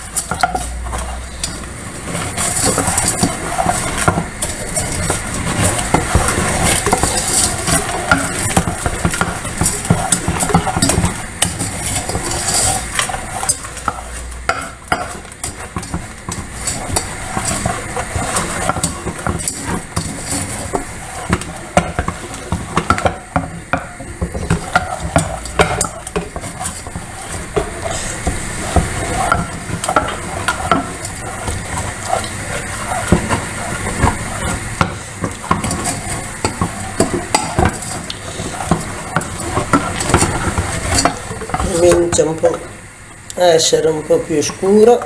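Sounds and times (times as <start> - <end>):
spoon scraping a pan: 0.0 - 43.0
low sizzle: 0.0 - 45.0.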